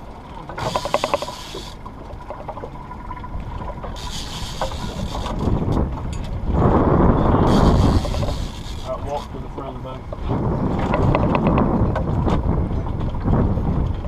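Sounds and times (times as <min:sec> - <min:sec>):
wind rumbling on microphone: 0:00.0 - 0:14.0
rattle of clicks: 0:00.6 - 0:02.6, 0:07.5 - 0:09.4.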